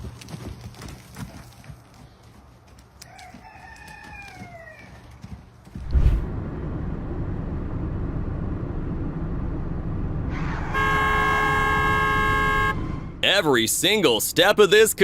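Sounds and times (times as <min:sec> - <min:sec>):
vehicle engine rumbling: 0:05.7 - 0:15.0
sharp jolt: 0:05.8 - 0:06.3
horn long blast: 0:10.3 - 0:13.2.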